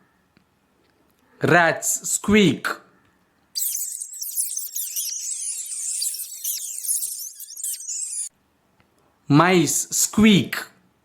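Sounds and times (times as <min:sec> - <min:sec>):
rats squeaking: 0:03.6 - 0:08.3.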